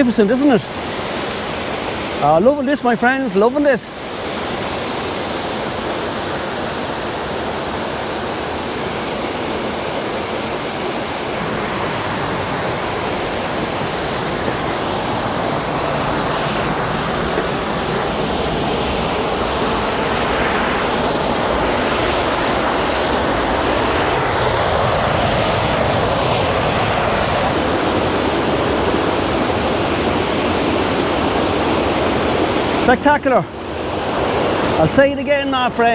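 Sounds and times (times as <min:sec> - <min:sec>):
rushing water: 0:00.0 - 0:35.9
thin high tone: 0:04.9 - 0:24.0.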